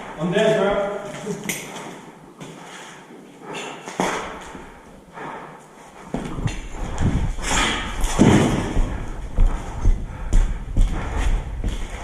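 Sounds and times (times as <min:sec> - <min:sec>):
footsteps on hard floor: 0:06.0 - 0:12.0
low rumble with thumps: 0:06.3 - 0:12.0.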